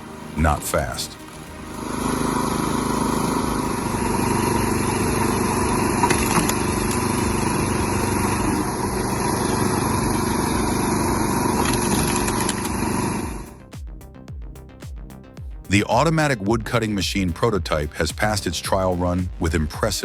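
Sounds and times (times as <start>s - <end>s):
thin steady whine: 0.0s - 13.6s
small petrol engine running: 1.1s - 13.6s.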